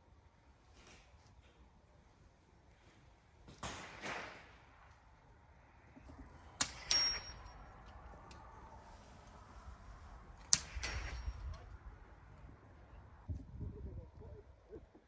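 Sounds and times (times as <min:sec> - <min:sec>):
steel target ringing: 0:06.6 - 0:07.9, 0:10.5 - 0:11.9.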